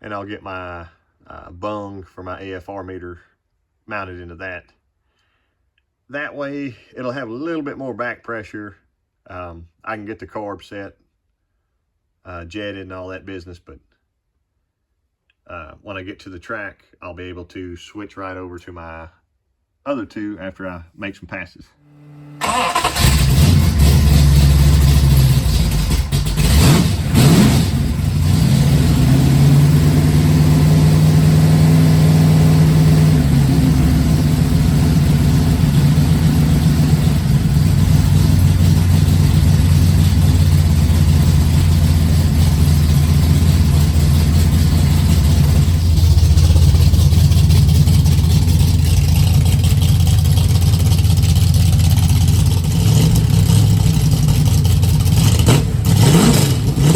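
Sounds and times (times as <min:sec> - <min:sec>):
car engine revving and idling: 0:21.8 - 0:56.9.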